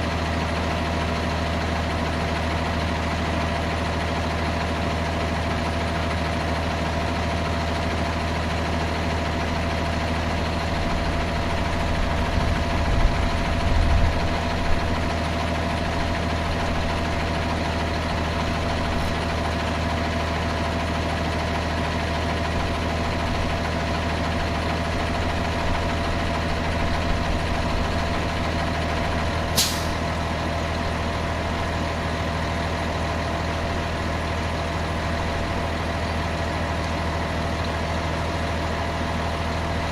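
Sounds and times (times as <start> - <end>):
engine idling: 0.0 - 39.9
short sharp click: 29.6 - 30.0.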